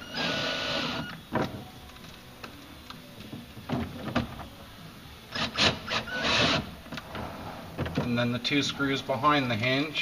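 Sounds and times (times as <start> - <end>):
cordless drill driving screw: 5.4 - 6.6.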